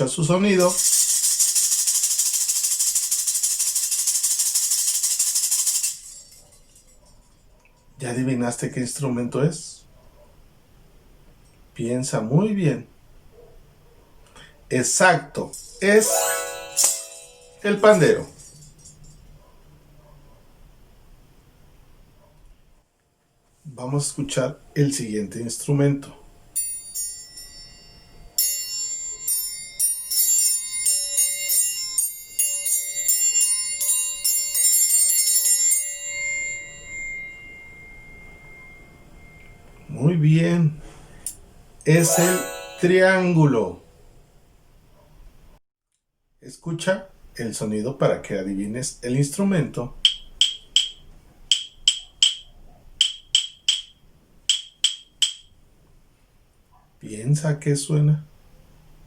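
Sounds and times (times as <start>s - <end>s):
triangle struck ringing: 15.7s - 18.0s, 35.8s - 39.7s, 42.0s - 43.4s.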